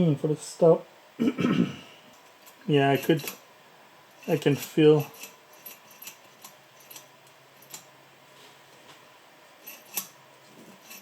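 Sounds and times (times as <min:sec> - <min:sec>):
hand tools clicking on metal: 0:02.4 - 0:03.4.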